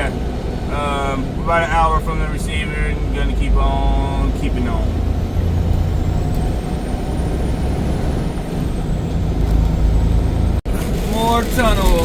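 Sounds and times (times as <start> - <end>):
truck engine and road rumble: 0.0 - 12.0.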